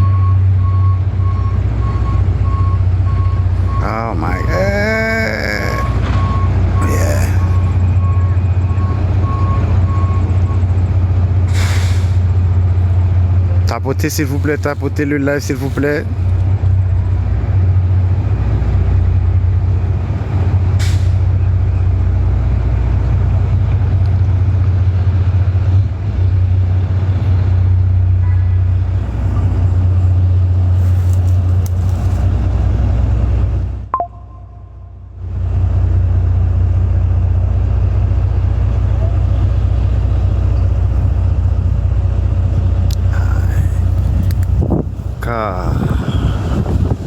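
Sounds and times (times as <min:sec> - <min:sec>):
diesel engine humming: 0:00.0 - 0:47.0.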